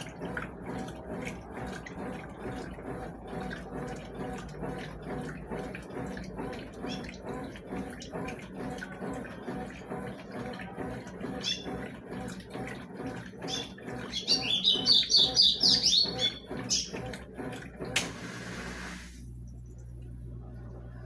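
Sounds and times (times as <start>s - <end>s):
washing machine sloshing: 0.0s - 21.0s
bird chirping: 14.2s - 16.4s
steady low hum: 16.3s - 21.0s.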